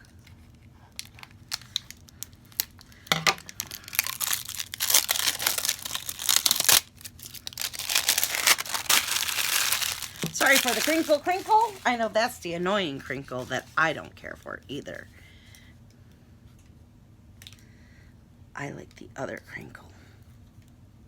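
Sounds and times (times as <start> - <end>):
plastic packaging crinkling and tearing: 0.3 - 12.4.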